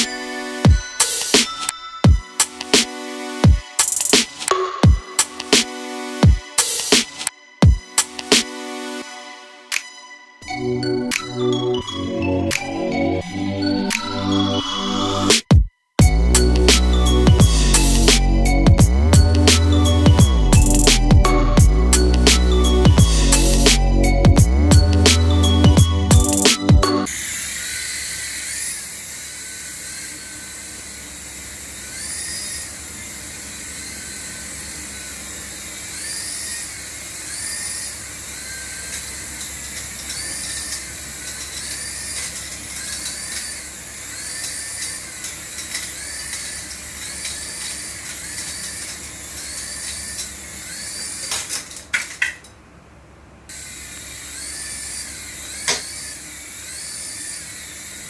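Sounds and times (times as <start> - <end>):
small electric motor whirring: 16.0 - 52.0, 53.5 - 58.0.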